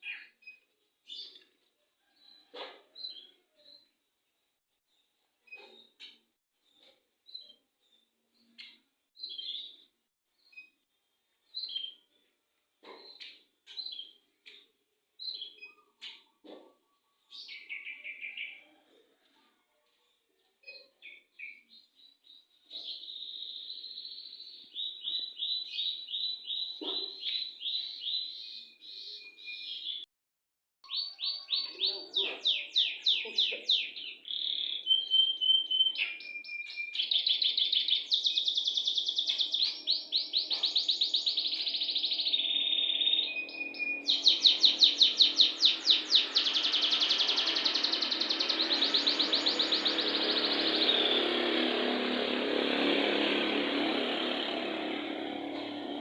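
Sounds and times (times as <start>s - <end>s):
canary singing trills: 30.8s - 52.2s.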